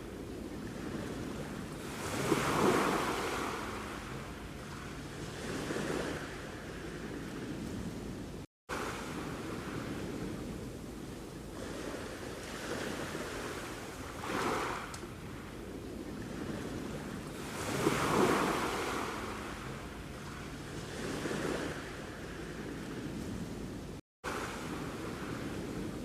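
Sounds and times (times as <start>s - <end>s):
sea waves breaking: 0.0s - 26.0s.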